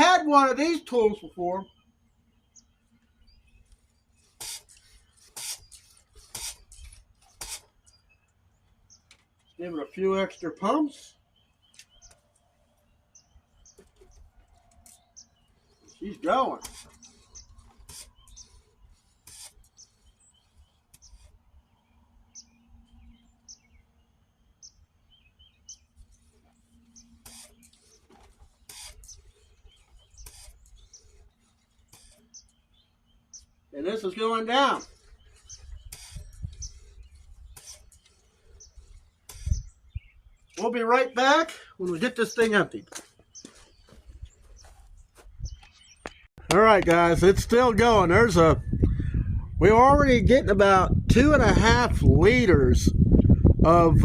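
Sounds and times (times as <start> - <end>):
hand pump hissing strokes: 4.2 - 7.8, 16.4 - 21.3, 27.2 - 32.4, 34.9 - 39.7
faint bird chirps: 11.1 - 33.8, 34.7 - 40.7.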